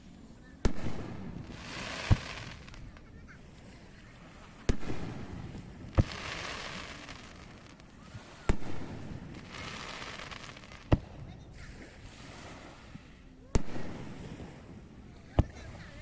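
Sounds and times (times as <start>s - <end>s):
fireworks booming: 0.6s - 3.2s, 4.6s - 11.4s.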